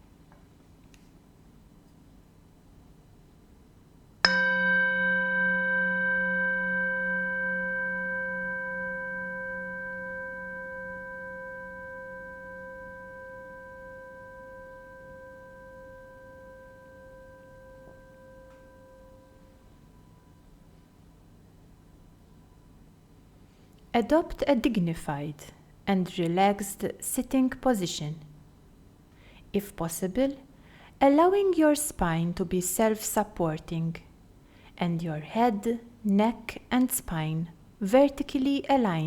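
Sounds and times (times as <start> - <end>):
singing bowl ringing: 4.3 - 20.6.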